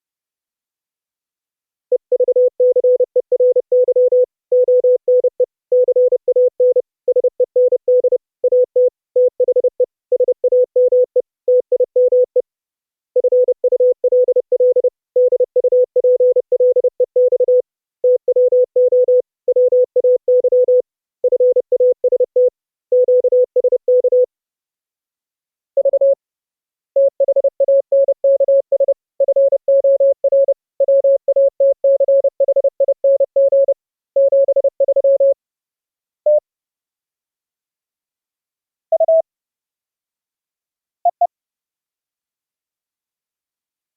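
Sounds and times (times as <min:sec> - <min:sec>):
higher-pitched morse code tone: 0:38.9 - 0:39.2, 0:41.1 - 0:41.3
morse code tone: 0:38.9 - 0:39.2, 0:41.1 - 0:41.3.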